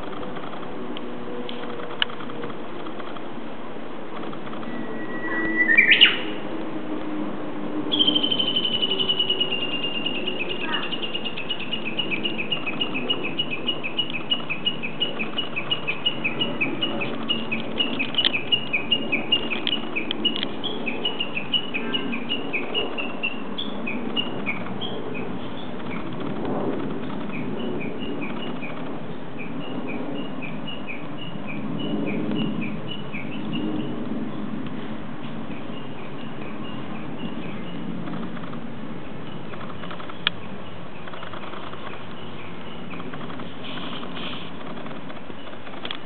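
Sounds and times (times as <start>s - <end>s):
bird chirping: 4.6s - 6.4s, 7.9s - 34.1s, 39.2s - 45.8s.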